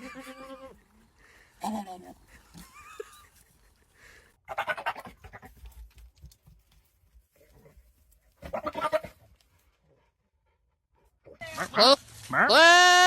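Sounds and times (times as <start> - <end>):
goat bleating: 0.0 - 0.9, 8.4 - 9.2, 11.4 - 13.0.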